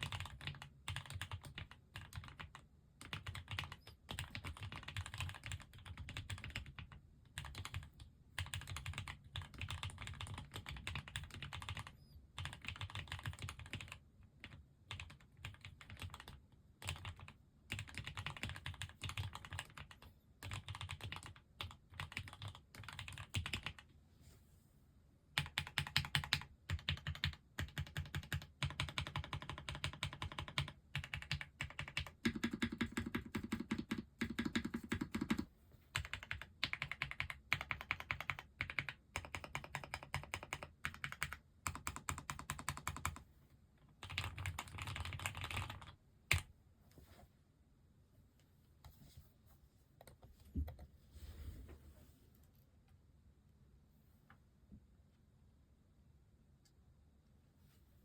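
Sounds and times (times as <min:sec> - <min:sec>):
mechanical keyboard typing: 0:00.0 - 0:23.8, 0:25.4 - 0:43.2, 0:44.0 - 0:46.5.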